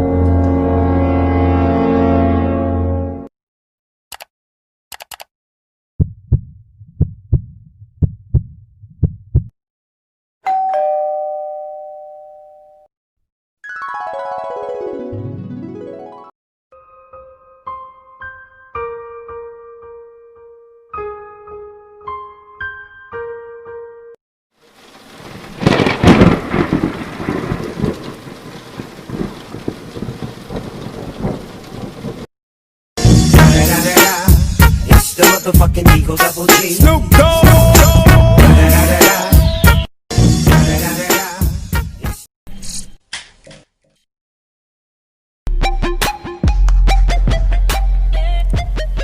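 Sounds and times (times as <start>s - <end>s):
piano notes: 0.0s - 3.3s, 13.6s - 24.2s
short clicks: 4.1s - 4.3s, 4.9s - 5.3s
heartbeat thumps: 6.0s - 9.5s
two-note doorbell chime: 10.4s - 12.9s
steady rain: 24.6s - 32.3s
thunderclap rumbling: 24.8s - 32.3s.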